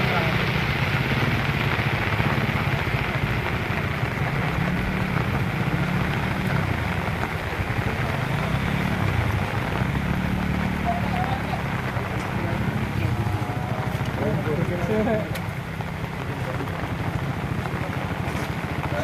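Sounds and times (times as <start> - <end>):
rain hissing: 0.0 - 19.0
small petrol engines running: 0.0 - 19.0.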